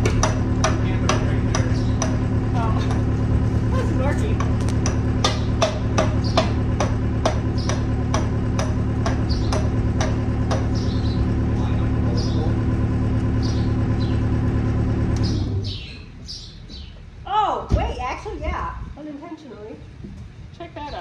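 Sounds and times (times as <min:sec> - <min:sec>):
birds chirping faintly: 0:05.2 - 0:14.4, 0:15.2 - 0:18.6.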